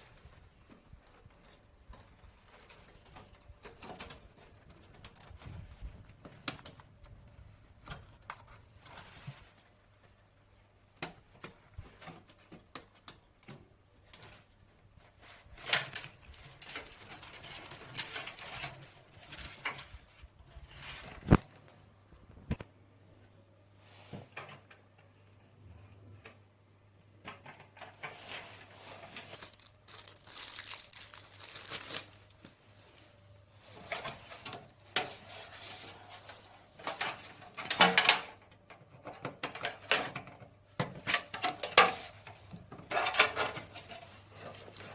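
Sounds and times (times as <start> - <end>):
packaging crinkling: 29.1 - 33.1.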